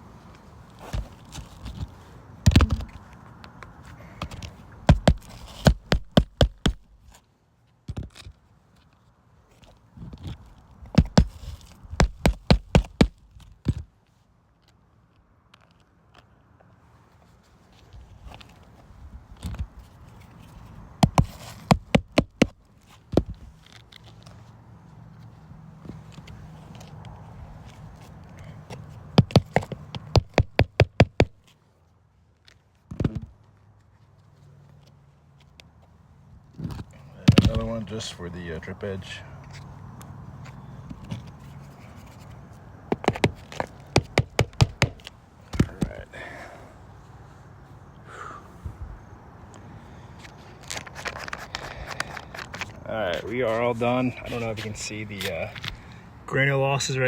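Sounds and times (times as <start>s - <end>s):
hammer striking nails: 4.9s - 6.9s, 11.0s - 11.4s, 12.0s - 13.2s, 21.0s - 22.6s, 29.2s - 31.4s, 42.9s - 45.8s.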